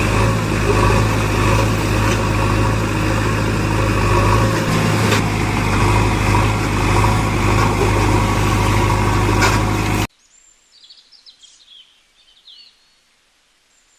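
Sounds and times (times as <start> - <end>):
motor hum: 0.0 - 10.1.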